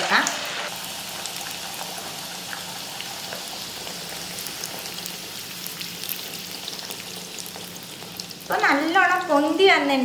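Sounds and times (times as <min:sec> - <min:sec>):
dough sizzling in hot oil: 0:00.0 - 0:10.0.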